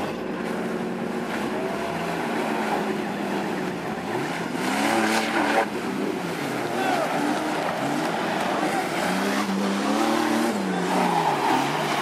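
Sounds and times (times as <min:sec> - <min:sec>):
off-road vehicle engine revving: 0:00.0 - 0:12.0.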